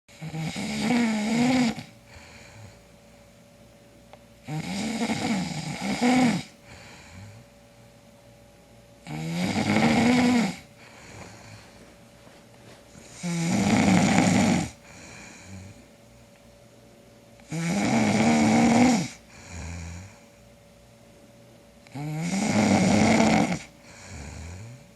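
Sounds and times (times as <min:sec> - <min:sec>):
man snoring: 0:00.1 - 0:02.8, 0:04.4 - 0:07.4, 0:09.0 - 0:10.7, 0:13.1 - 0:15.9, 0:17.5 - 0:20.2, 0:21.9 - 0:24.9
quiet breaths: 0:00.5 - 0:03.5, 0:04.8 - 0:07.6, 0:10.5 - 0:16.0, 0:19.1 - 0:20.6, 0:21.9 - 0:24.9.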